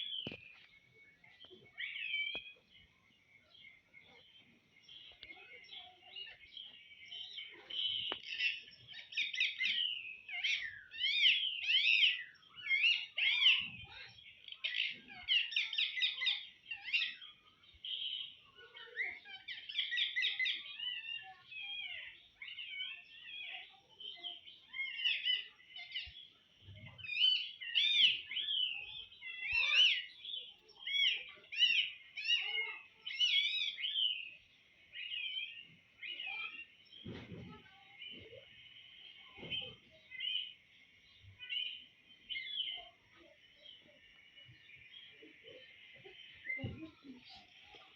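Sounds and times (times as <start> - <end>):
parakeet chattering and warbling: 13.0 - 17.2, 18.5 - 26.0, 27.6 - 33.8, 36.0 - 36.6.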